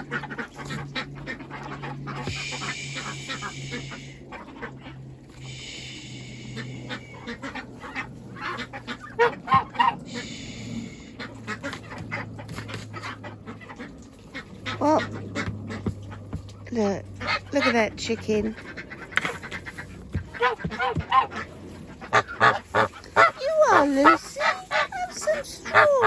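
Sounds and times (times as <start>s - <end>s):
geese and ducks honking: 0.0s - 26.0s.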